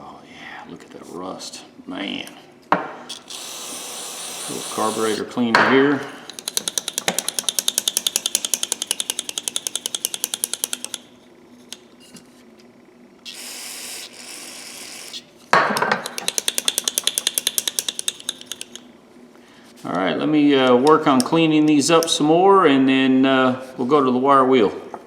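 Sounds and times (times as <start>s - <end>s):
aerosol can spraying hiss: 3.2s - 5.2s.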